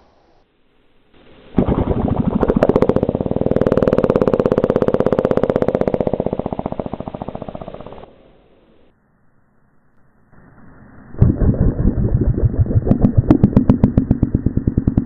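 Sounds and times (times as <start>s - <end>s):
slowed-down fart rattle: 1.6s - 8.9s, 11.2s - 15.0s.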